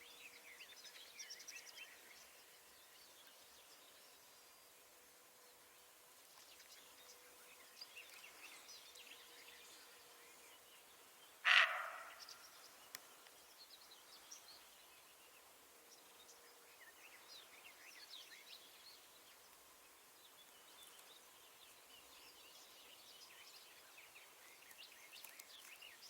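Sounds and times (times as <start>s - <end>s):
faint birdsong chirps: 0.0s - 26.0s
deer barking: 11.5s - 12.2s.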